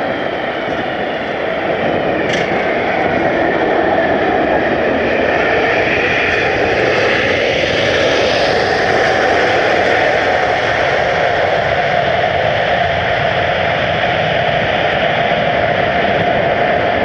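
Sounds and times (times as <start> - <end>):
jet engines roaring: 0.0 - 17.0.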